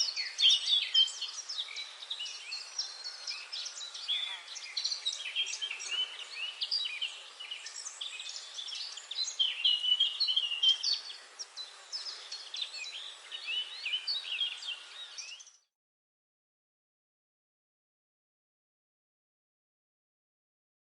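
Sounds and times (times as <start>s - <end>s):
faint hiss: 0.0s - 15.6s
songbirds singing: 0.0s - 15.7s.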